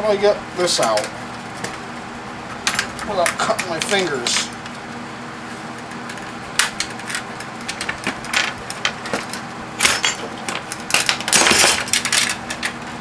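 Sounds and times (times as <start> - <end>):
faint steady hum: 0.0 - 13.0
small parts clicking and knocking: 6.0 - 12.8.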